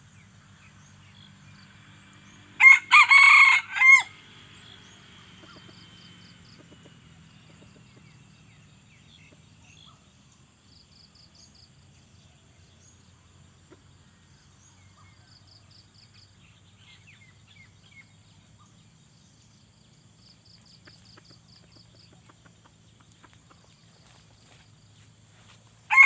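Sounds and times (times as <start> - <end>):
rooster crowing: 2.6 - 4.2.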